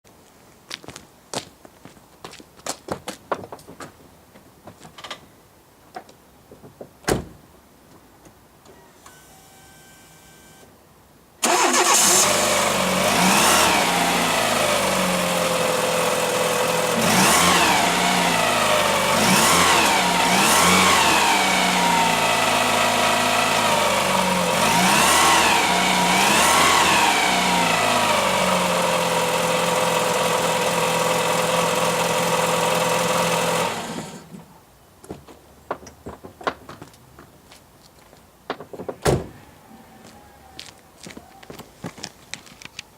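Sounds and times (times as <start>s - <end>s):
car engine starting and revving: 11.4s - 34.3s.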